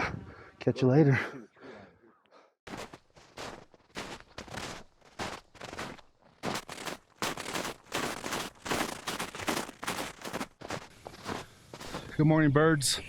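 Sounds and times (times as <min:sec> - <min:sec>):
footsteps on a trail: 0:02.7 - 0:12.2.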